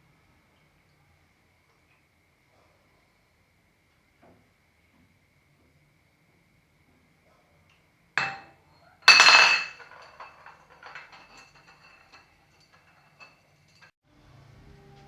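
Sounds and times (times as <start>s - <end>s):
glass knocking: 8.2s - 8.5s, 9.1s - 13.3s
glass clinks and rattles: 8.2s - 13.9s
glass crashing: 9.1s - 13.9s.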